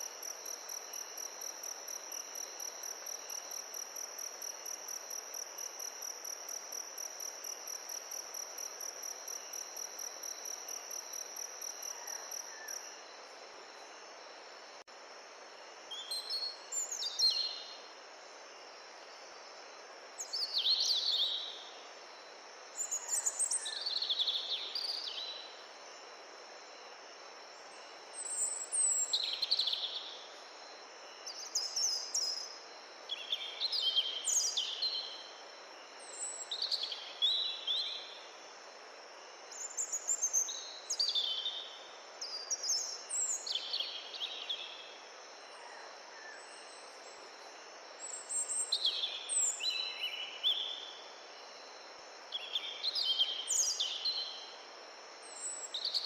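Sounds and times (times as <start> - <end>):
background hiss: 0.0 - 56.0
bird singing: 22.8 - 25.5, 52.3 - 54.4.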